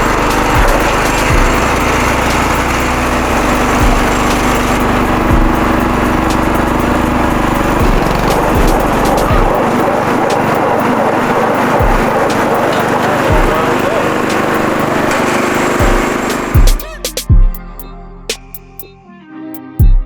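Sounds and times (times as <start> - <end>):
short low thumps: 0.0 - 10.0, 11.8 - 12.3, 15.8 - 17.7
small engine running: 0.0 - 17.2.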